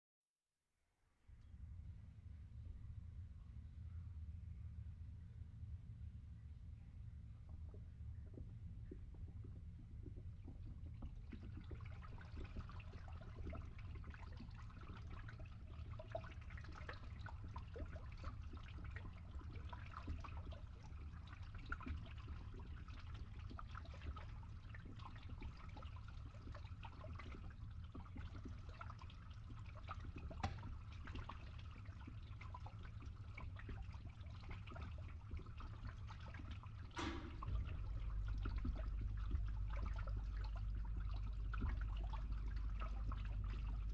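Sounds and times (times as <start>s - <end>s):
water gurgling through a pipe: 7.4s - 43.9s
pump humming: 34.2s - 43.9s.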